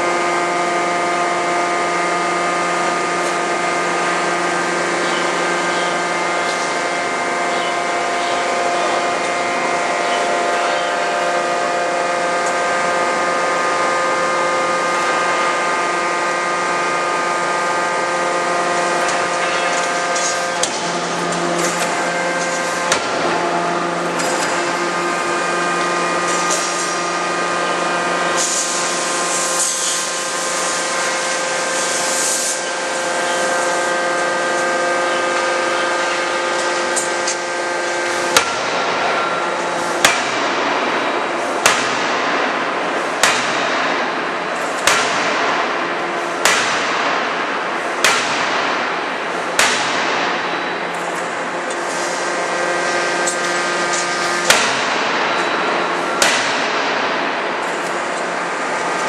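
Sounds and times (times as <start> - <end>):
steady machine hum: 0.0 - 59.0
forging hammer blows: 13.9 - 31.2, 31.9 - 59.0.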